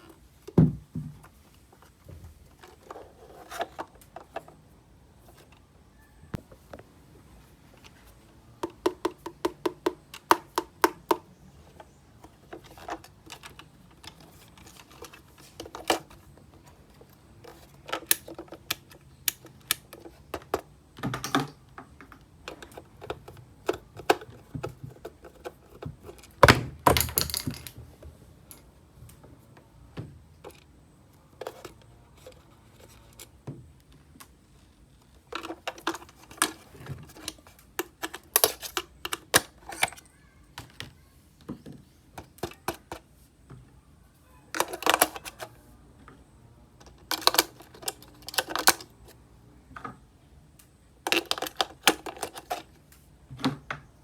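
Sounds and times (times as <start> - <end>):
plastic toy clicks and taps: 8.6 - 11.3.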